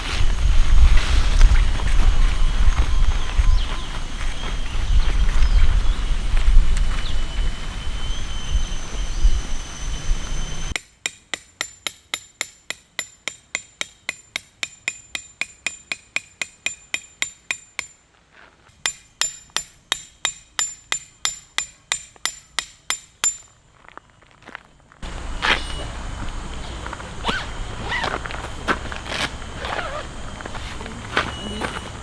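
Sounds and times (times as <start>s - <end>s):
hammer striking tent peg: 10.8s - 18.0s, 18.8s - 23.5s.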